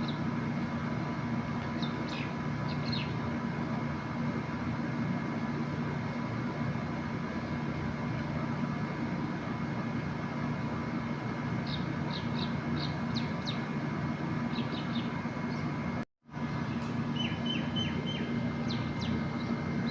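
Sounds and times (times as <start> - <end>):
steady hum: 0.0 - 19.9
high bird chirps: 1.8 - 3.2, 11.6 - 13.7, 14.5 - 15.7, 16.6 - 19.9.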